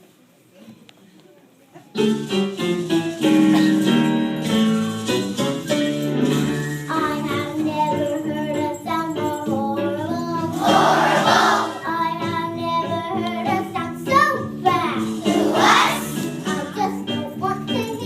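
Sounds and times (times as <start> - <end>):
instrumental backing: 1.8 - 18.0
children's song singing: 6.3 - 18.0.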